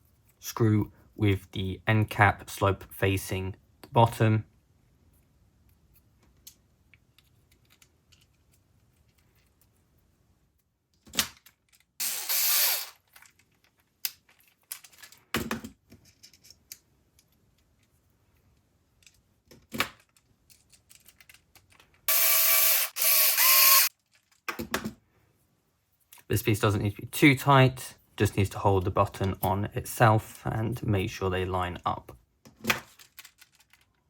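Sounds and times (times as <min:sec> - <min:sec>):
plastic parts clicking and knocking: 0:06.2 - 0:09.7, 0:10.9 - 0:12.0, 0:12.9 - 0:22.1, 0:23.4 - 0:25.0, 0:32.4 - 0:34.0
electric screwdriver running: 0:12.0 - 0:13.0, 0:22.1 - 0:23.9.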